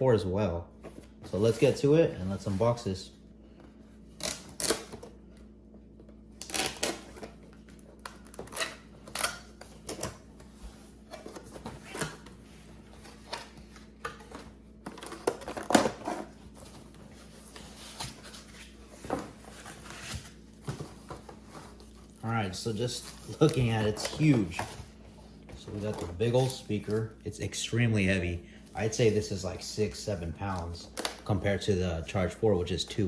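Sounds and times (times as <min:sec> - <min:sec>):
cardboard packaging rustling: 0:06.4 - 0:27.2.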